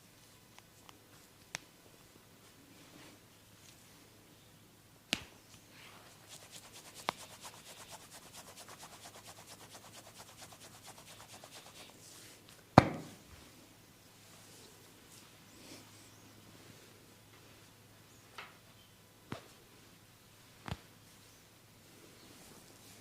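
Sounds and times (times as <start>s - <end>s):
hands rubbing skin: 6.1s - 12.1s.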